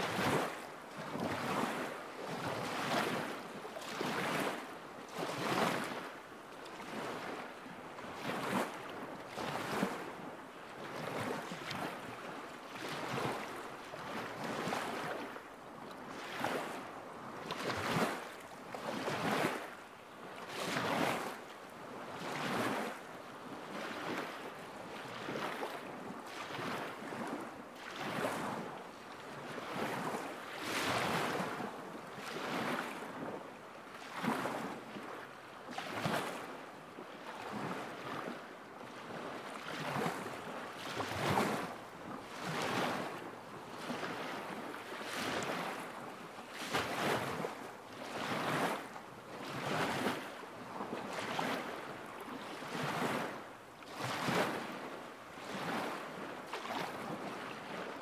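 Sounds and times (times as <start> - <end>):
small waves lapping: 0.0 - 58.0.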